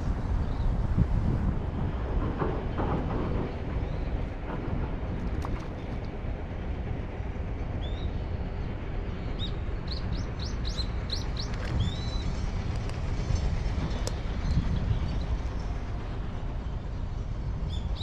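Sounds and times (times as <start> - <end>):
wind rumble on microphone: 0.0 - 18.0.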